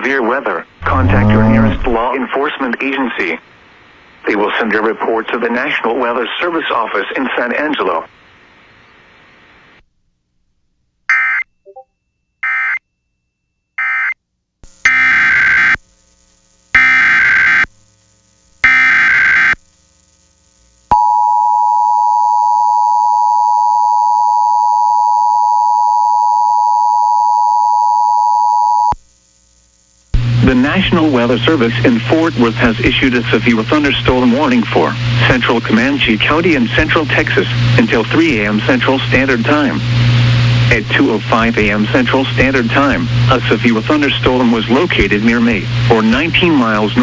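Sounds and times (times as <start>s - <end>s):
buzzy data bursts: 0.8s - 2.0s, 14.8s - 20.9s.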